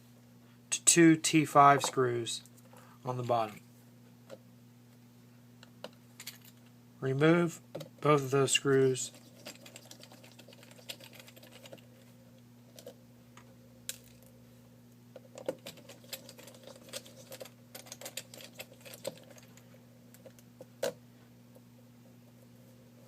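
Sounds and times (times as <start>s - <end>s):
faint electrical hum: 0.0s - 23.0s.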